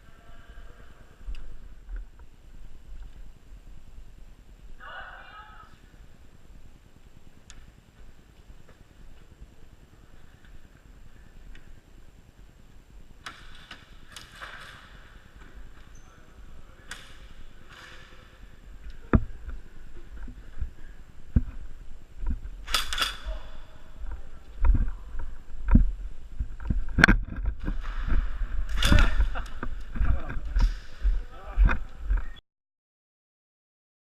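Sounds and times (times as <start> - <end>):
sharp knocks and clicks: 25.6 - 28.2.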